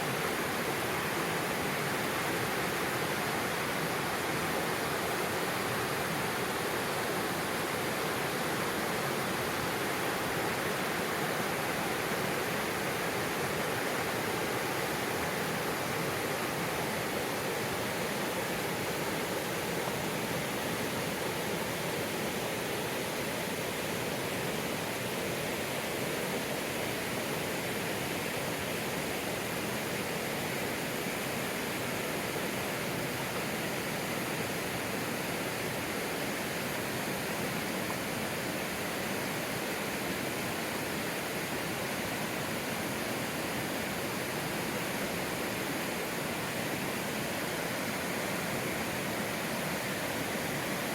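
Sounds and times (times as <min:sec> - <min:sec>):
river water rushing: 0:00.0 - 0:50.9.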